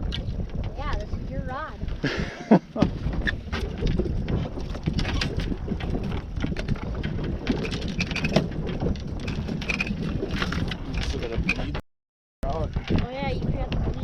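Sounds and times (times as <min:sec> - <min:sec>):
wind buffeting microphone: 0:00.0 - 0:11.8, 0:12.4 - 0:14.0.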